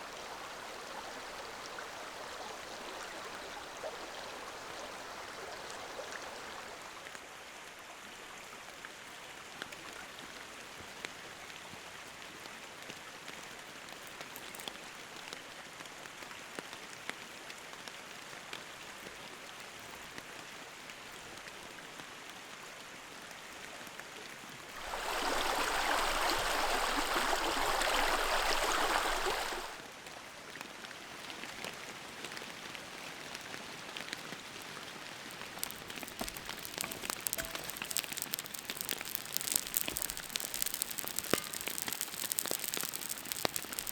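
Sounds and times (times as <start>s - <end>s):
stream running: 0.0s - 10.4s, 24.7s - 29.8s, 33.5s - 43.9s
steady rain: 0.0s - 43.9s
drops ticking: 35.3s - 43.9s.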